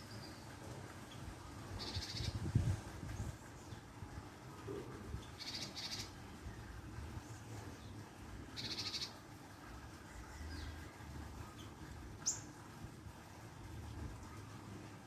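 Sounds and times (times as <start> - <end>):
bird chirping: 1.8 - 2.4, 5.2 - 6.1, 8.6 - 9.2.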